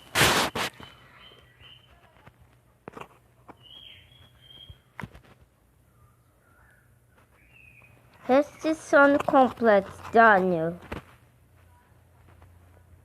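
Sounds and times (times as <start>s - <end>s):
faint high chirps: 0.7s - 2.1s, 3.6s - 4.9s, 5.9s - 8.8s.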